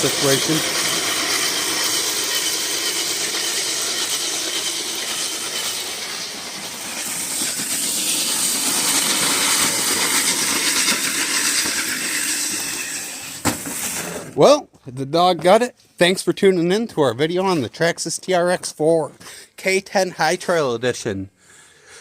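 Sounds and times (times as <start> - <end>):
gears whining: 0.0 - 14.4
toy truck electric motor: 0.0 - 14.4.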